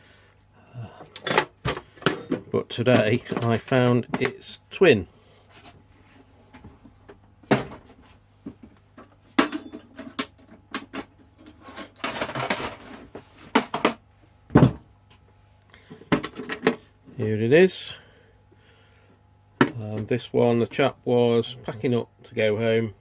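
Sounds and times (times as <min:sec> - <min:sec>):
toolbox contents rattling: 0:09.4 - 0:14.0
toolbox knocks and clunks: 0:13.5 - 0:14.9
toolbox set down thump: 0:14.5 - 0:14.8.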